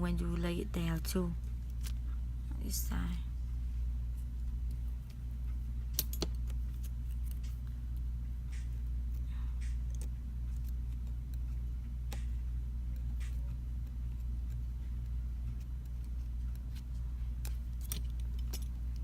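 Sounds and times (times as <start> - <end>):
low hum: 0.0 - 19.0
small parts clicking and tapping: 4.6 - 19.0.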